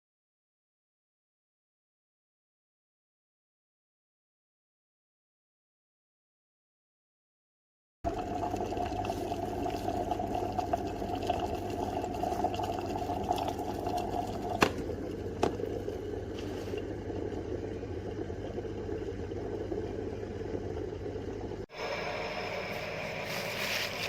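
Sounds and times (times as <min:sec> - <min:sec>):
kettle heating water hiss: 0:08.1 - 0:24.0
low hum: 0:08.1 - 0:24.0.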